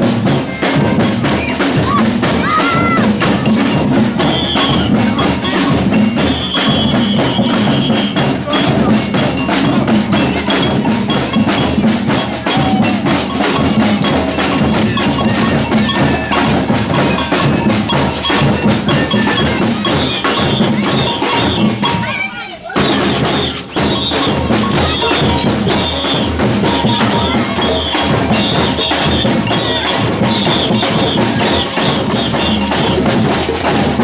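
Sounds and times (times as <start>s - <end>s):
deep bass drums: 0.0s - 22.1s, 22.8s - 34.0s
quick drum strikes: 0.0s - 34.0s
metallic bell hits: 9.3s - 22.3s, 23.0s - 34.0s.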